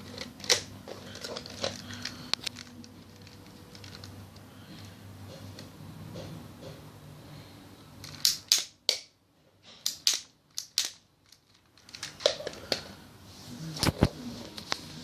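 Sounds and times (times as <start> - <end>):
plastic toy parts clicking: 9.8 - 12.6.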